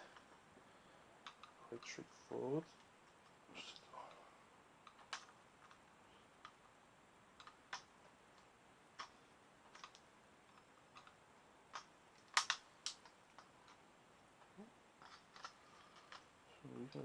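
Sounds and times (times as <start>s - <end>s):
small plastic parts clicking: 1.2s - 2.0s, 4.8s - 17.0s.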